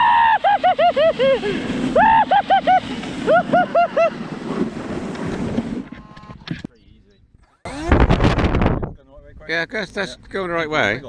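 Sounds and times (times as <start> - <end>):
people laughing: 0.1 - 4.2.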